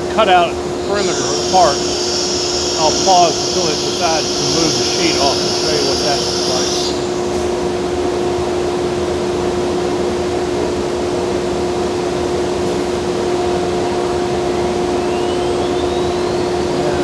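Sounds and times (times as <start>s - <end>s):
dust collector running: 0.0s - 17.0s
vacuum pump running: 0.0s - 17.0s
rising machine whine: 0.1s - 7.9s, 13.2s - 17.0s.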